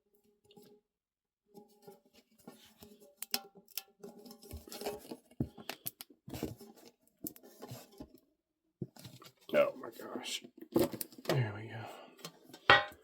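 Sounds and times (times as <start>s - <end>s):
sharp clicks and taps on metal tin: 3.2s - 3.9s.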